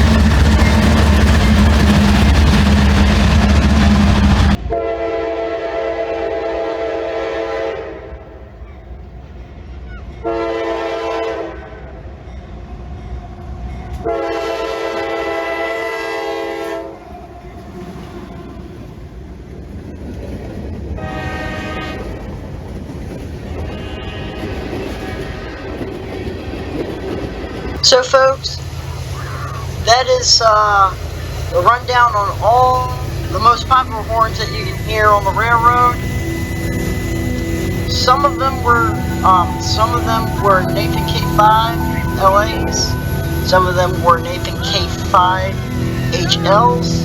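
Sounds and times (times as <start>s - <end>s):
train rumbling: 0.0s - 47.0s
locomotive air horn blasts: 4.6s - 8.2s, 10.2s - 11.7s, 14.1s - 17.0s, 21.0s - 22.2s, 32.4s - 47.0s.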